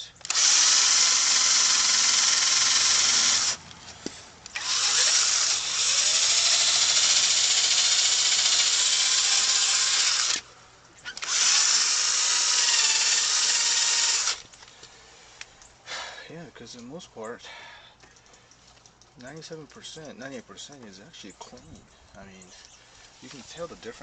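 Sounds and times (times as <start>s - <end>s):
electric drill buffing plastic: 0.0s - 3.6s, 4.5s - 10.4s, 11.1s - 14.4s.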